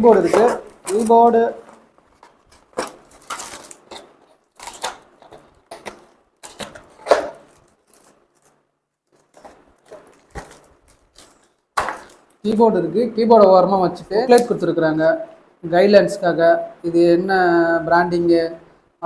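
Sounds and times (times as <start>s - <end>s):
packaging rustling: 0.0s - 12.5s.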